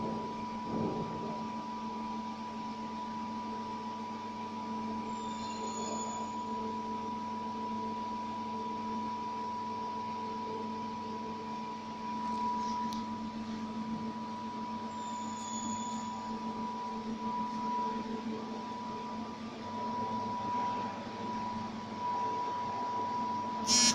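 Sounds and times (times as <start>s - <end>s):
faint high chirp: 23.7s - 23.9s
machine hum: 23.7s - 23.9s.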